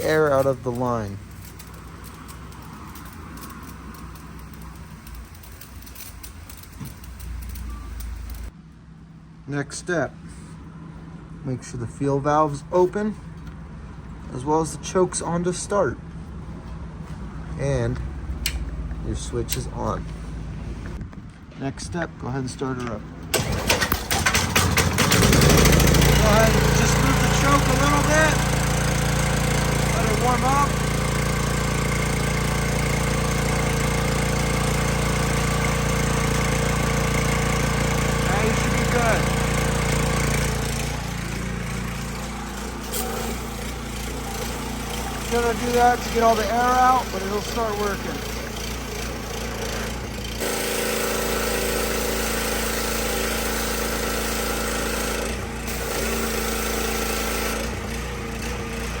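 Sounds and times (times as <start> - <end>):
small gasoline engine running: 0.0 - 8.5, 23.3 - 59.0.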